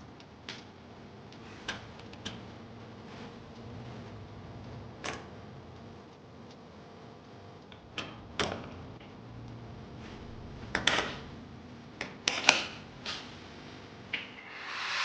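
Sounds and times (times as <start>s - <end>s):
low hiss: 14.2s - 15.0s.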